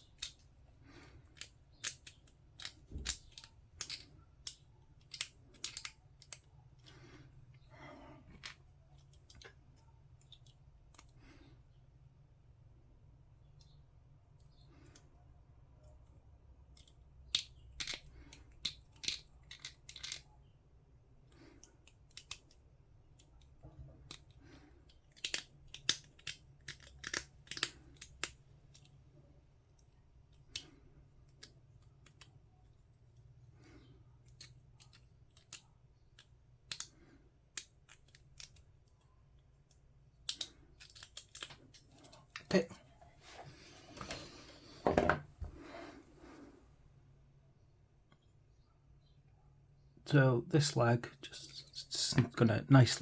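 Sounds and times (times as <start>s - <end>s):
plastic clicks and snips: 1.3s - 7.0s, 21.3s - 29.0s, 34.2s - 42.5s.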